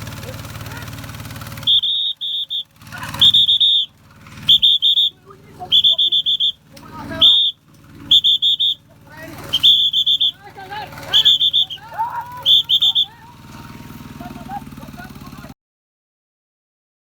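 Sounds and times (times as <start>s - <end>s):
person shouting: 0.2s - 1.0s, 9.9s - 13.5s
shrill whistle blasts: 1.6s - 6.6s, 7.2s - 8.9s, 9.5s - 10.5s, 11.1s - 13.3s.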